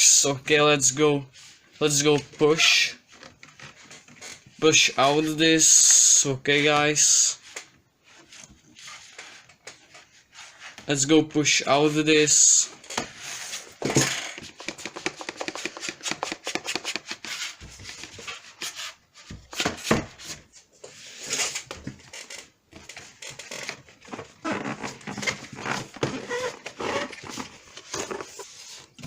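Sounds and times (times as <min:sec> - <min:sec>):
cardboard rubbing and scraping: 0:13.0 - 0:29.0.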